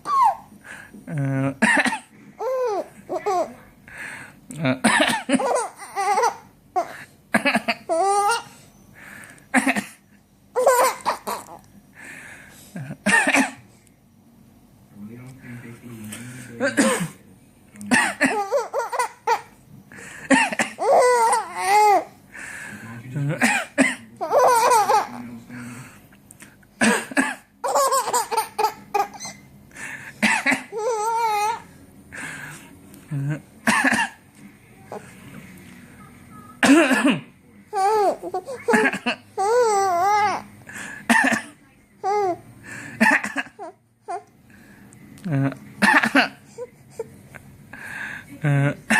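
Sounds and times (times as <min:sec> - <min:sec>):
baby laughing: 0:00.0 - 0:00.5, 0:02.4 - 0:03.6, 0:05.1 - 0:08.5, 0:10.6 - 0:11.6, 0:18.1 - 0:19.6, 0:20.4 - 0:22.1, 0:24.2 - 0:25.2, 0:27.6 - 0:29.4, 0:30.4 - 0:31.7, 0:37.7 - 0:40.4
man coughing: 0:01.1 - 0:02.1, 0:04.6 - 0:05.6, 0:09.5 - 0:10.0, 0:12.8 - 0:13.6, 0:16.6 - 0:17.2, 0:17.9 - 0:18.6, 0:20.2 - 0:20.9, 0:23.3 - 0:24.2, 0:26.8 - 0:27.5, 0:30.2 - 0:30.8, 0:33.1 - 0:34.2, 0:36.6 - 0:37.3, 0:38.7 - 0:39.2, 0:41.1 - 0:41.6, 0:43.0 - 0:43.6, 0:45.8 - 0:46.4.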